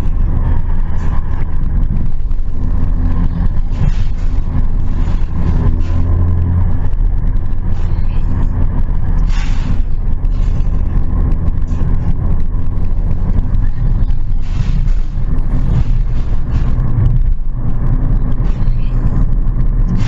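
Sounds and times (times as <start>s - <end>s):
car engine humming: 0.0s - 20.0s.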